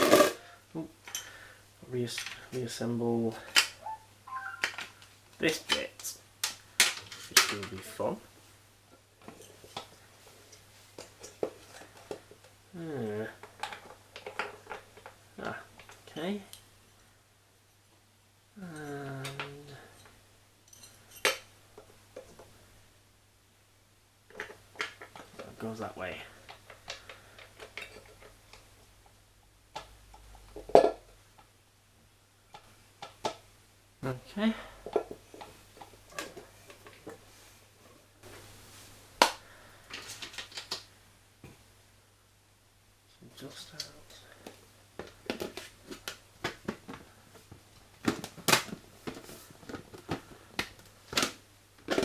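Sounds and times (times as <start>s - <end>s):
plastic parts clicking and knocking: 13.4s - 15.2s, 24.3s - 25.6s, 26.4s - 28.9s, 29.7s - 31.5s, 32.5s - 33.5s, 34.8s - 37.2s, 44.4s - 52.0s.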